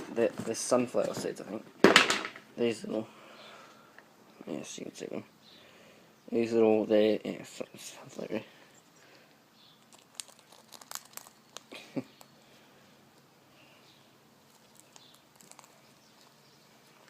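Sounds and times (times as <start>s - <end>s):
bird cracking seeds in beak: 9.8s - 12.3s, 14.5s - 15.9s.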